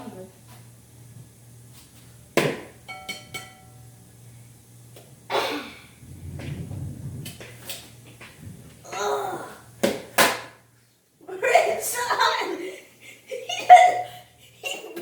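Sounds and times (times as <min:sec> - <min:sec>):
bowl ringing tone: 0:02.8 - 0:04.0.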